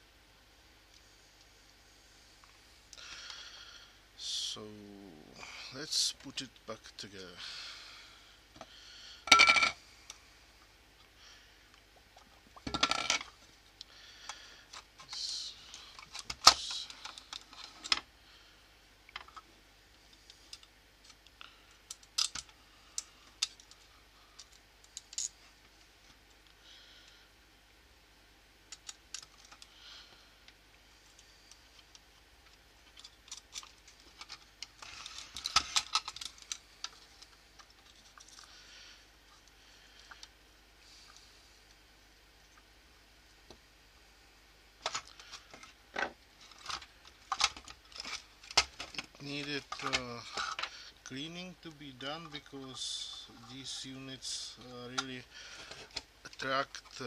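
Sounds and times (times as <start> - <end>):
plastic parts clattering: 12.6 - 13.3, 33.0 - 38.5, 44.8 - 50.7
plastic parts clicking and knocking: 33.0 - 38.5, 44.8 - 50.7.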